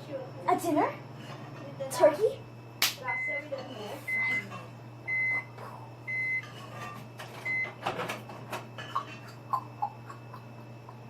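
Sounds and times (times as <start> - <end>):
steady low hum: 0.0 - 11.0
microwave oven beep: 3.0 - 11.0.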